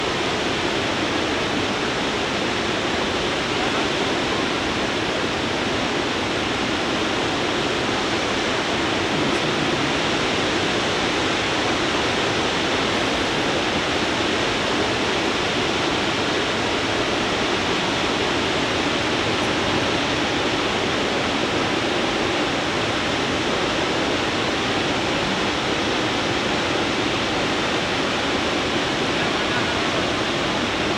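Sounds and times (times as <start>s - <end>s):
waterfall crashing: 7.7s - 30.9s.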